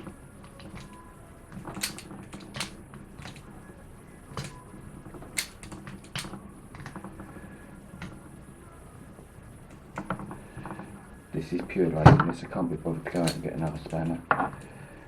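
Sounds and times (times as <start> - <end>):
spanner clicking on metal: 0.0 - 3.6, 4.3 - 4.6, 5.3 - 7.0, 13.1 - 14.6.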